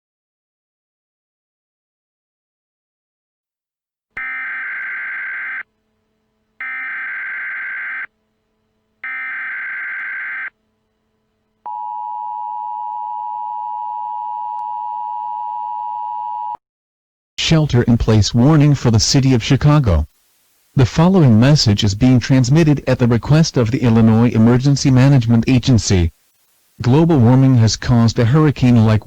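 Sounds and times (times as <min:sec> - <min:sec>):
two-tone attention signal: 0:06.6 - 0:08.1.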